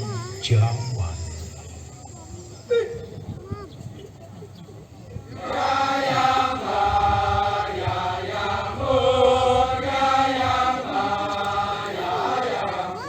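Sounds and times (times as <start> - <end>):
chorus chanting held notes: 5.3 - 13.0.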